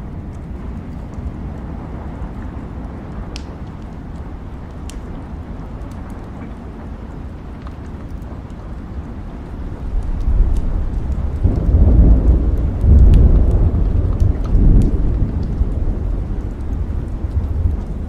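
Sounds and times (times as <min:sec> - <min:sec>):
sharp crackles: 0:00.0 - 0:18.0
steady rain: 0:00.0 - 0:18.0
thunder rumbling: 0:09.3 - 0:18.0.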